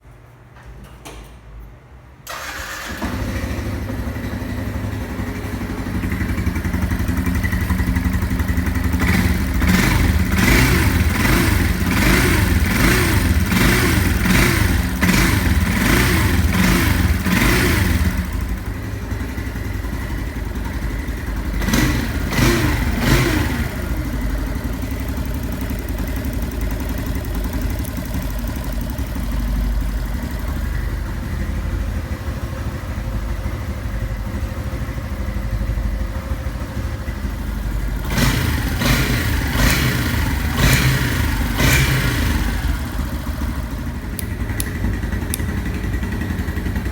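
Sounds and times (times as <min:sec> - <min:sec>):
motorcycle engine idling and revving: 0:02.3 - 0:46.9.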